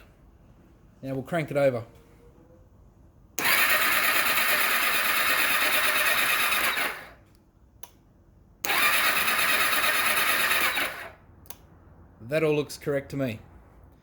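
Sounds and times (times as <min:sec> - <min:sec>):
electric starter cranking engine: 0:03.4 - 0:07.2, 0:08.6 - 0:11.2.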